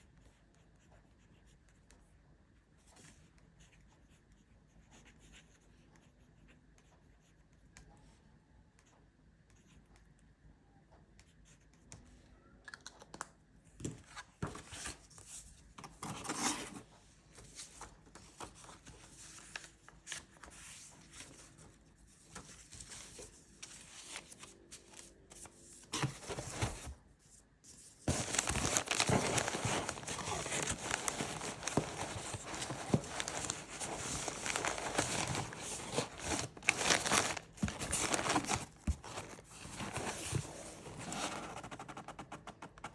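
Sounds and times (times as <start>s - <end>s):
packing material crinkling and tearing: 28.1s - 41.3s.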